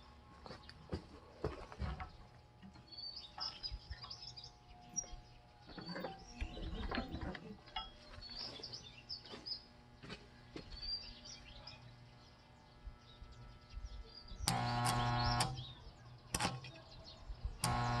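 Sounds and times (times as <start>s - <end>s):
small birds chirping: 2.0s - 18.0s
loud electric buzz: 13.0s - 16.7s, 17.4s - 18.0s.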